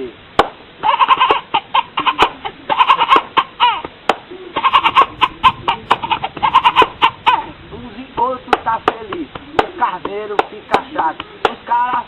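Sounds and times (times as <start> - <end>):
ram bleating: 0.8 - 3.8, 4.6 - 7.5.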